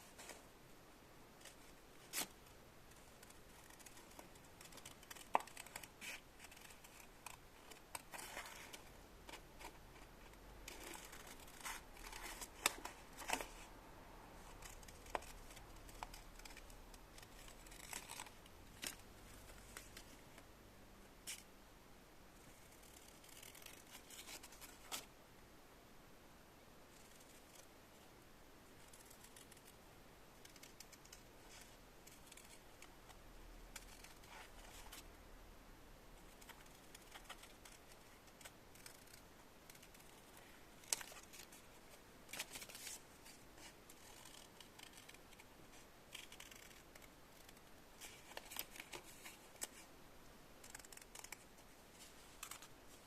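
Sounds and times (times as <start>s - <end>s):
small clicks and snips: 50.6s - 51.6s.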